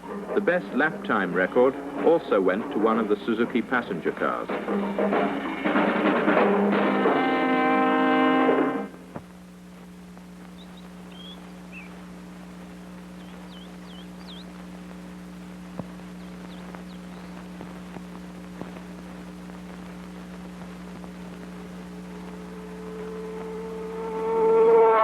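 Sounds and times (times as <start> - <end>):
steady low hum: 0.0 - 24.8
clicks and crackle: 9.1 - 22.5
short bird chirps: 10.6 - 11.9.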